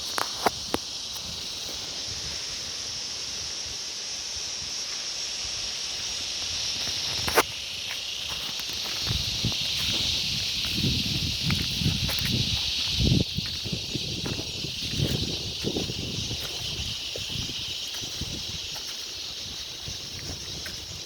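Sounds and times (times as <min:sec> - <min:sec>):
insect chorus drone: 0:00.0 - 0:21.0.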